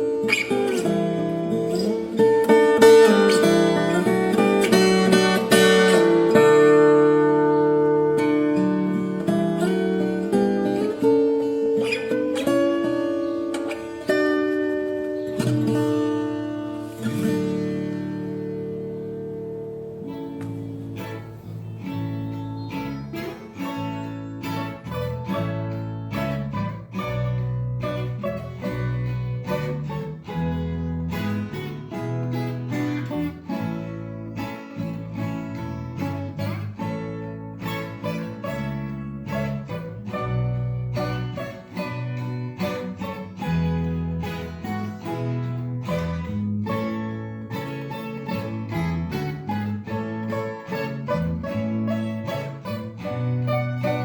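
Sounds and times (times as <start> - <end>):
plucked acoustic guitar music: 0.0 - 54.0.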